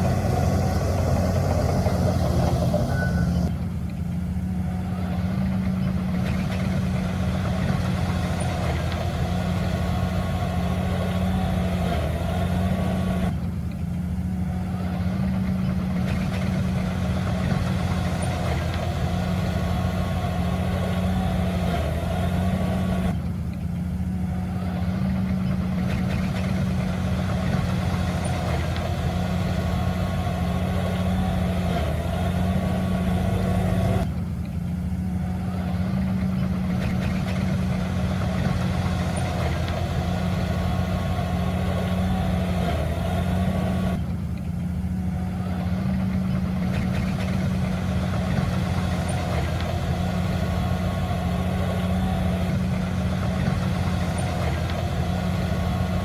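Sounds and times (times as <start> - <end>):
diesel engine droning: 0.0 - 56.0.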